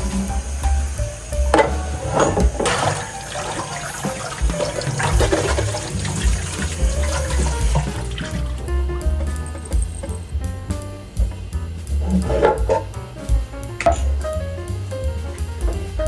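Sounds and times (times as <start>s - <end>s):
tap water splashing into sink: 1.5s - 8.7s.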